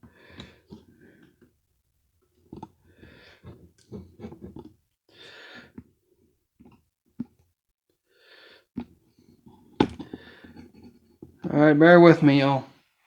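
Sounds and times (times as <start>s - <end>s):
handling knocks and rubs: 3.4s - 4.7s.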